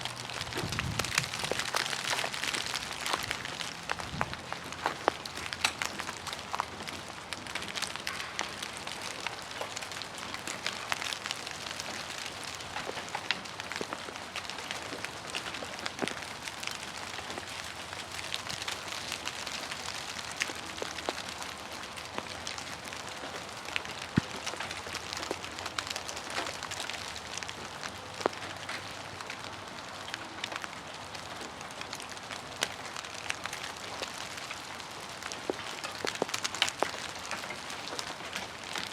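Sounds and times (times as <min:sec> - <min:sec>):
ice pieces pattering down: 0:00.1 - 0:38.9.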